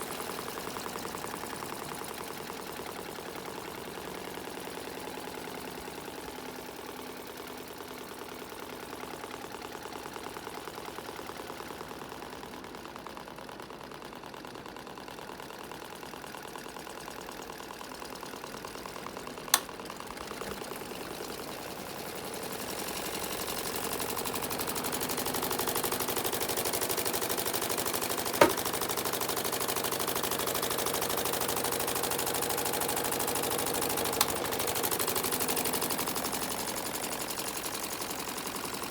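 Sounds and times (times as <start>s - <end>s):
sharp clicks: 19.5s - 19.8s.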